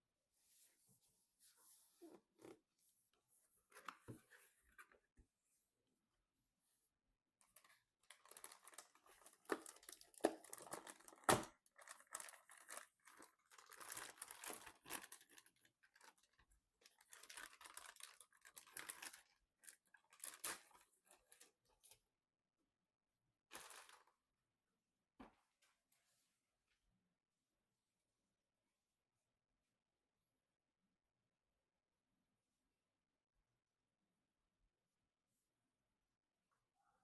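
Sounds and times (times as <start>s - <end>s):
packaging crinkling and tearing: 7.5s - 21.5s.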